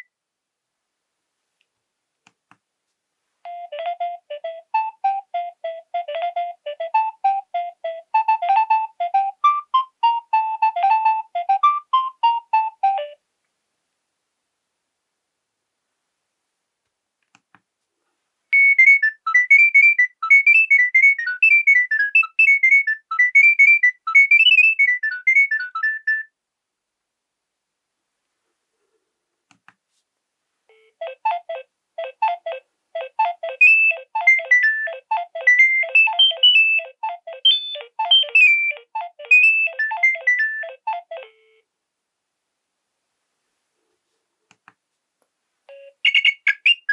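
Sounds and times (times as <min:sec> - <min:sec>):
polyphonic ringtone melody: 0:03.5 - 0:13.2, 0:31.0 - 0:41.6.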